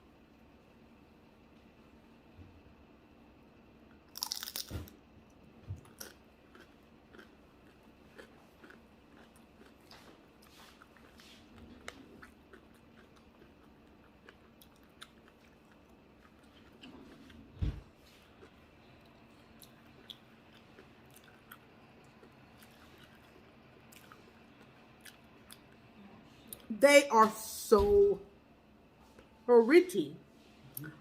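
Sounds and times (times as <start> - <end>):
chewing with crackles: 3.8 - 26.7
crunchy bite: 4.1 - 5.0.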